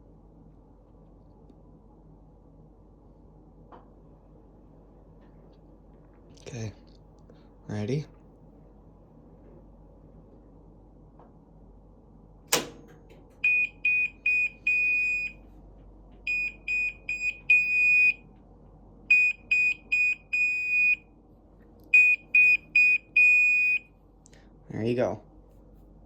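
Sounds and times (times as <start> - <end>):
sharp click: 12.5 - 13.0
washer high-pitched beeps: 13.4 - 15.4, 16.3 - 18.2, 19.1 - 21.1, 21.9 - 23.9.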